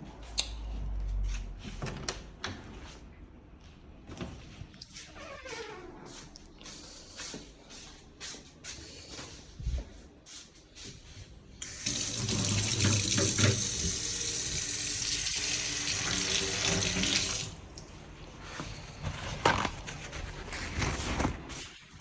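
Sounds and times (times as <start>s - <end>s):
water running: 11.6s - 18.2s.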